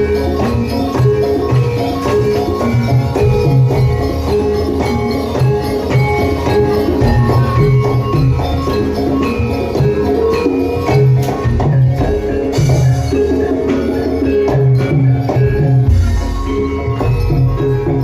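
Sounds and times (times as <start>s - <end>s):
jingling percussion: 0.0s - 18.0s.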